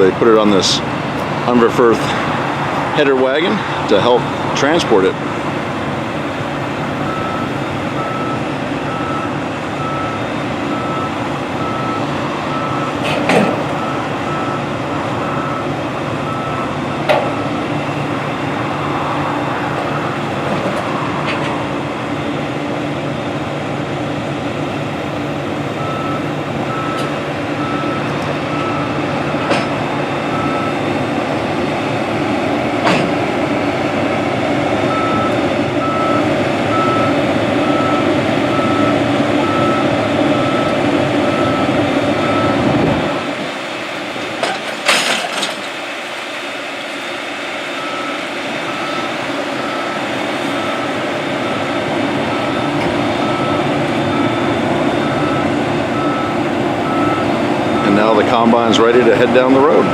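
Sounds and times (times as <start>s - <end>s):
combine engine idling: 0.0s - 44.7s, 46.6s - 59.9s
backup alarm beeping: 6.6s - 21.2s, 25.8s - 30.9s, 34.8s - 43.4s, 47.8s - 59.9s.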